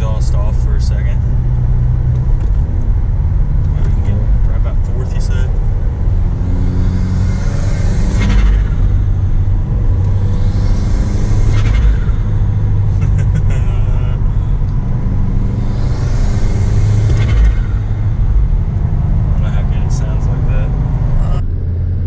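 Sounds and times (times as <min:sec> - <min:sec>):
car engine rumbling under load: 0:00.0 - 0:22.0
turbo whoosh: 0:05.3 - 0:21.4.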